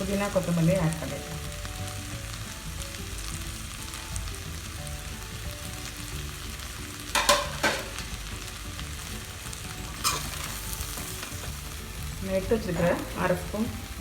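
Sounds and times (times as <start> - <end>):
rice frying with sizzle: 0.0 - 14.0
spoon scraping pot: 9.9 - 11.5.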